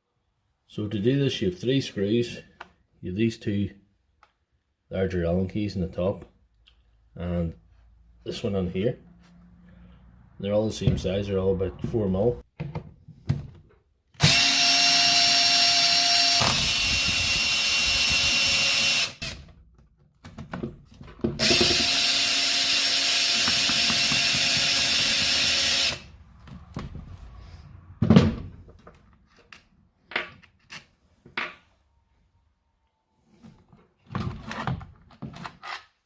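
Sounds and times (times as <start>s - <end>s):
power drill-driver running: 14.2s - 19.5s, 21.4s - 26.1s
tool and parts knocking and clicking: 19.7s - 22.0s, 23.2s - 25.6s, 28.0s - 31.6s.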